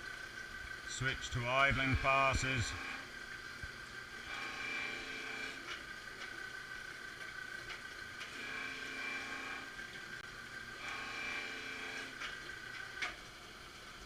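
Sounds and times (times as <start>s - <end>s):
knife grinder high-pitched tone: 0.9s - 3.4s, 4.0s - 6.0s, 8.2s - 12.5s.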